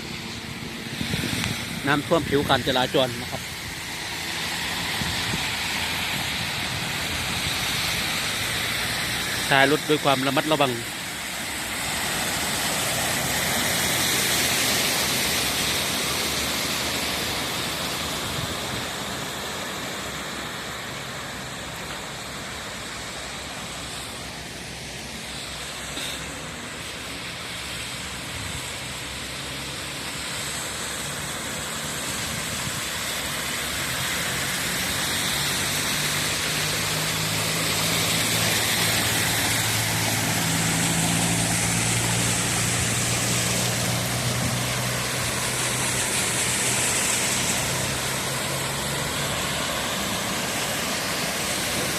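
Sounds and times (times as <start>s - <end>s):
low engine hum: 0.0s - 51.9s
tyres hissing on wet road: 0.0s - 51.9s.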